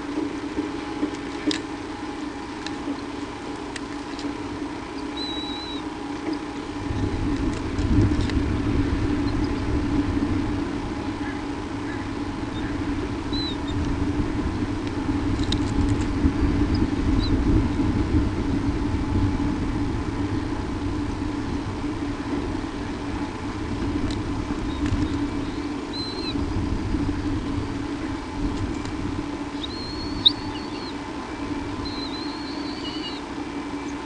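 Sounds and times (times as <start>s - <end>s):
low hum and rumble: 0.0s - 34.0s
faint bird chirps: 5.0s - 5.8s, 13.3s - 13.8s, 24.7s - 26.4s, 29.6s - 31.0s, 31.8s - 34.0s.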